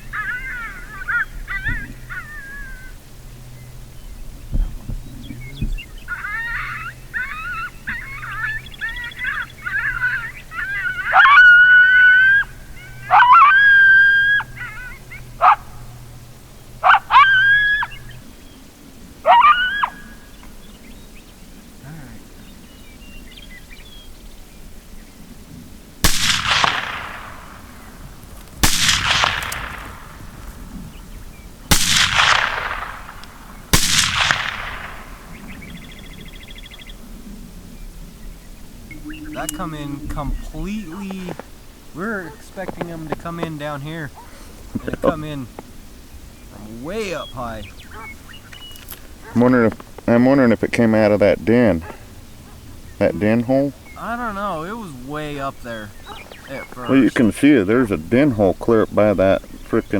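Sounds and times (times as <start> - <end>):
coyote howls and yips: 0.0 - 3.1, 5.4 - 21.0, 26.1 - 31.2, 38.7 - 42.6, 46.5 - 49.7, 51.7 - 57.2
low steady hum: 0.0 - 59.9
rifle shots echoing: 26.0 - 36.6.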